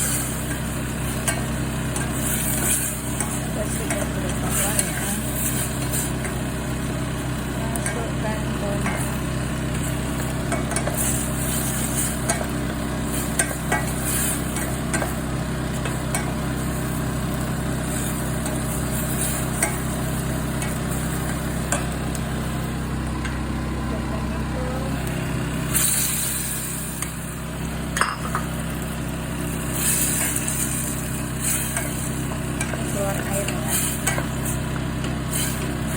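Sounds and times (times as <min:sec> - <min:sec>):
meat sizzling in a pan: 0:00.0 - 0:23.6, 0:25.0 - 0:35.9
steady low hum: 0:00.0 - 0:35.9.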